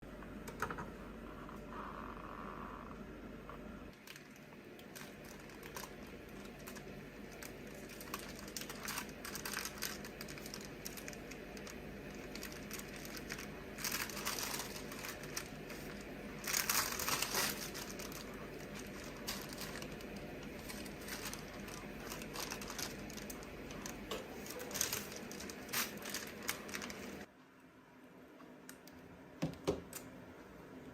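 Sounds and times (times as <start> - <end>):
crackling and rustling clicks: 3.9 - 27.3.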